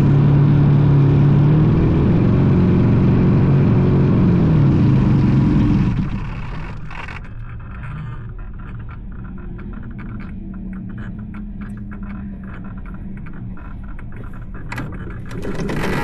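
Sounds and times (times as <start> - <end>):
model airplane propeller motor: 2.0 - 16.0
short clicks and rattles: 5.9 - 16.0.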